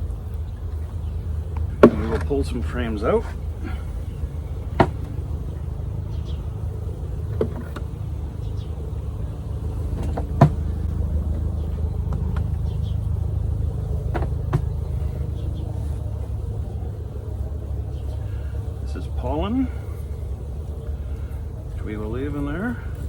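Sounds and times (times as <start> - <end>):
low rumble: 0.0 - 23.0
wooden knocks and clicks: 4.8 - 5.1.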